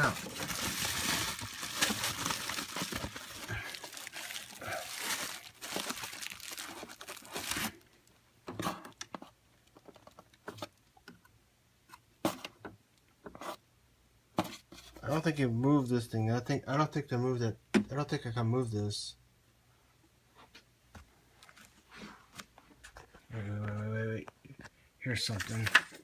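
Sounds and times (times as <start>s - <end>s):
packing material crinkling: 0.0s - 8.1s.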